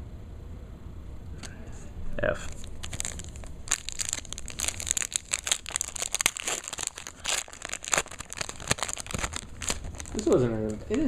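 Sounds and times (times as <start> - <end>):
card packs crinkling: 2.5 - 11.0.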